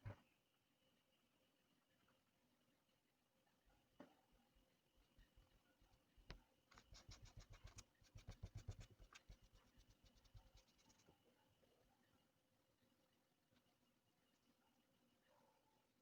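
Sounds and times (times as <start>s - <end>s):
chalk scratching: 6.7s - 11.2s.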